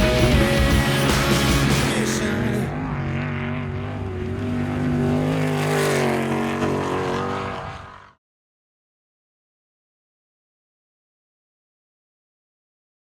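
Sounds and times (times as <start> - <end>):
race vehicle engine running: 0.0 - 8.2.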